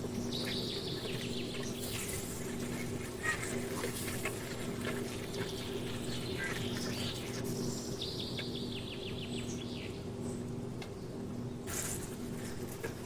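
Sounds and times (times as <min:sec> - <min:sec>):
bird singing a trill: 0:00.0 - 0:01.8, 0:05.5 - 0:10.1
outdoor background noise: 0:00.0 - 0:13.0.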